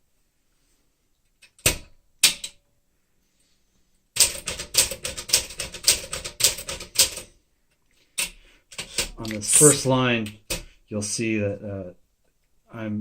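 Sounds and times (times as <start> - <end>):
typewriter keystrokes: 4.2 - 7.2.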